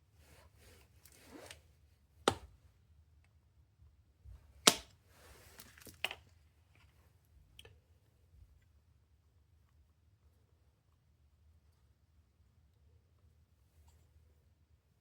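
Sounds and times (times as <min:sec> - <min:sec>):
light clicks and handling noises: 0:04.6 - 0:08.8.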